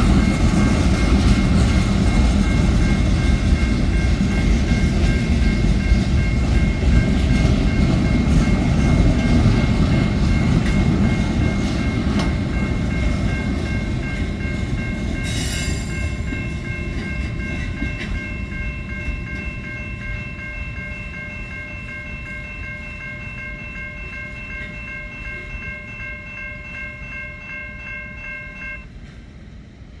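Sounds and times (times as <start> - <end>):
high-pitched ringing: 0.0 - 28.9
freight train wheels rumbling: 0.0 - 30.0.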